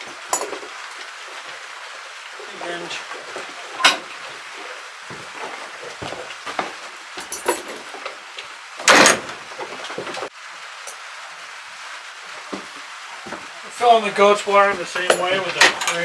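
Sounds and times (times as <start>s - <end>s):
knocks and clatter: 2.8s - 10.3s, 14.6s - 16.0s.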